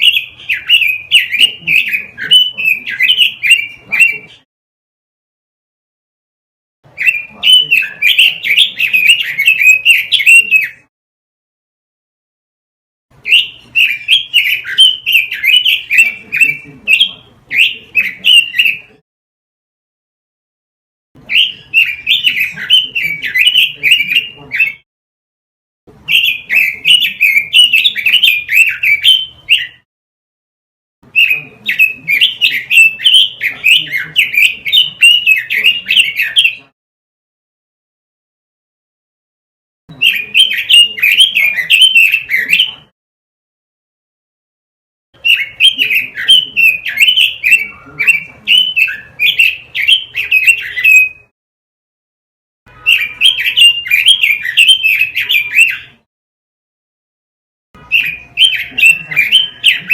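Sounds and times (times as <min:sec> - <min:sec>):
bird warbling whistles: 0:45.2 - 0:51.3, 0:52.8 - 0:56.0.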